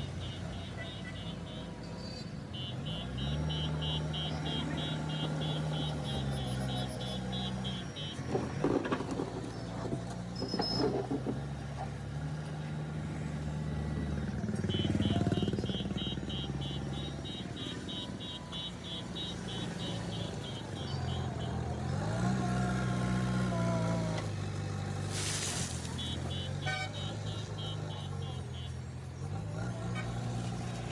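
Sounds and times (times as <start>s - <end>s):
diesel engines running under load: 0.0s - 30.9s
engine revving: 10.4s - 28.6s
rapid high beeping: 14.7s - 21.6s.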